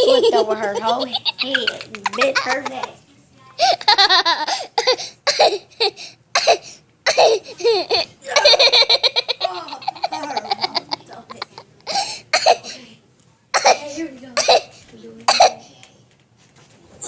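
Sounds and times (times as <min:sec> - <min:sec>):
children laughing: 0:00.0 - 0:03.0, 0:03.6 - 0:06.0, 0:07.2 - 0:12.0.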